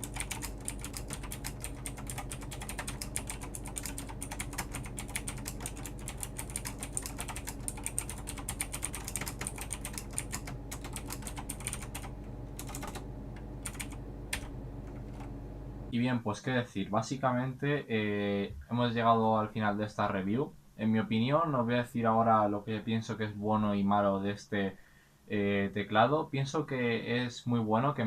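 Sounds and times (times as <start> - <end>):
mechanical keyboard typing: 0.0 - 15.3
steady low hum: 0.0 - 26.0.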